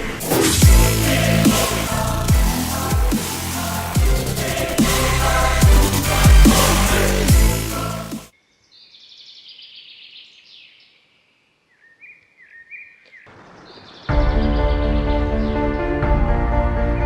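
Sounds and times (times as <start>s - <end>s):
bass-heavy electronic dance music: 0.0s - 8.3s
music: 0.0s - 8.3s, 14.1s - 17.0s
songbirds chirping and trilling: 8.3s - 15.8s.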